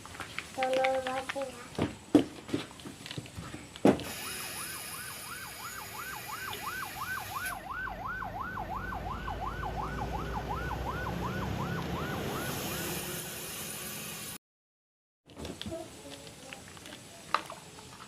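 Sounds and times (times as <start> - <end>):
toy electronic siren wailing: 4.1 - 13.2.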